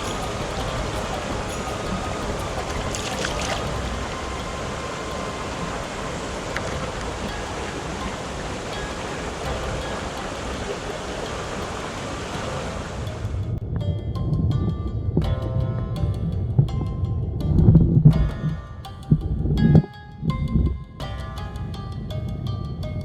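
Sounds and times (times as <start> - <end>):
stream water rushing: 0.0 - 13.6.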